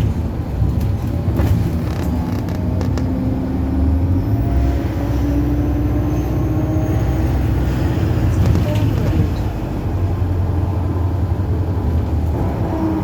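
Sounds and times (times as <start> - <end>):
rattles and clicks: 0.0 - 3.2, 8.3 - 9.6
bus engine rumbling: 0.0 - 13.0.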